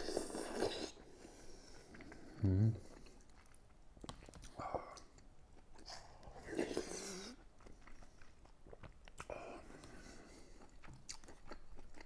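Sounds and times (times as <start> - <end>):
person chewing food: 1.7 - 12.0
person murmuring: 2.4 - 2.8.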